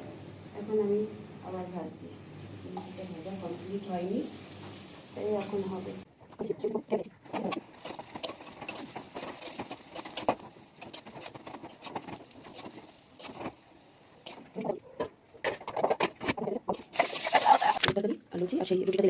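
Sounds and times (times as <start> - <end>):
hot oil crackling in a pan: 2.5 - 6.0, 7.5 - 14.6.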